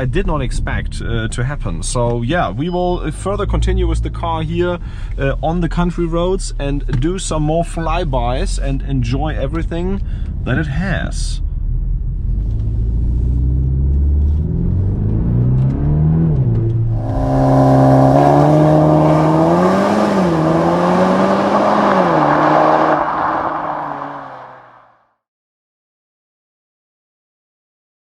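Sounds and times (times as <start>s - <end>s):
turbocharged car engine revving: 13.6s - 24.8s.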